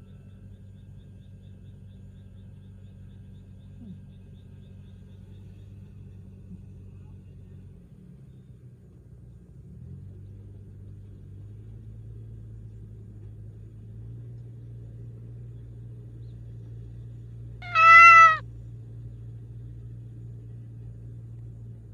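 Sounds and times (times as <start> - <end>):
cat meowing: 17.6 - 18.4.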